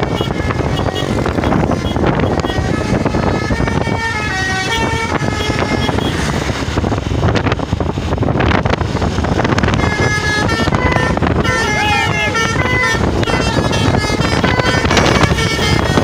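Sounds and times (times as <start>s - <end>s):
multi-tone bus horn playing a tune: 0.0s - 6.7s, 9.4s - 16.0s
engine and road rumble: 0.0s - 16.0s.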